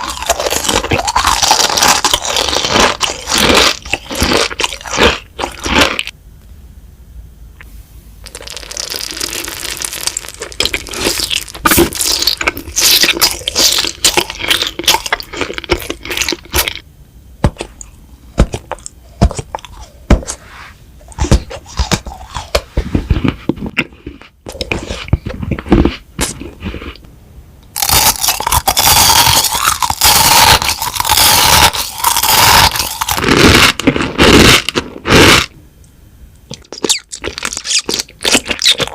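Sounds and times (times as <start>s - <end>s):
crunching bites and chewing: 0.0s - 6.1s, 8.2s - 16.8s, 17.4s - 20.4s, 21.0s - 27.0s, 27.7s - 35.6s, 36.5s - 38.9s
dense crackling: 8.2s - 20.4s.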